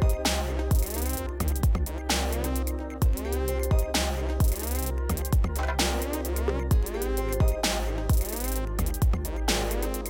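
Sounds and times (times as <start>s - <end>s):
electronic music with kick drum: 0.0s - 10.0s.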